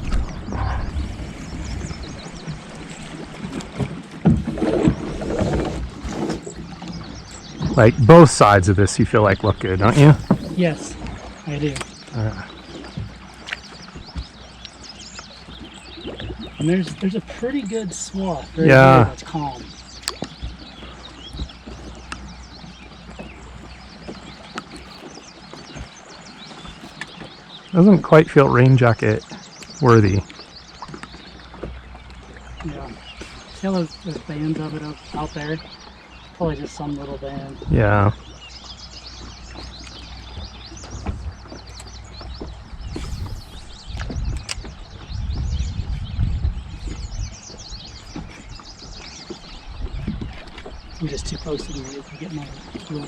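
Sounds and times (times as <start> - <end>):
wind on microphone: 0.0 - 16.8, 39.1 - 53.0
knocks and clicks from boat: 0.0 - 53.0
moving water: 0.0 - 53.0
small birds chirping: 0.0 - 53.0.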